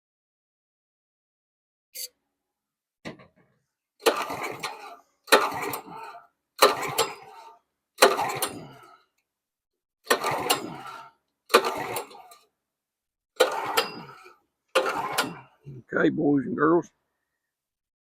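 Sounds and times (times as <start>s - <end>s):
engine cranking with recoil starter: 4.0s - 9.2s, 10.0s - 12.6s, 13.4s - 15.7s.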